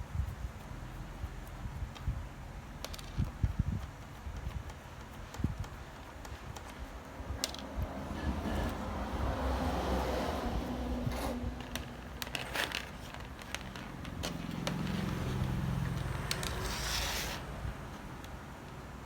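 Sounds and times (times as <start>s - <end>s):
scraping: 5.1s - 18.5s.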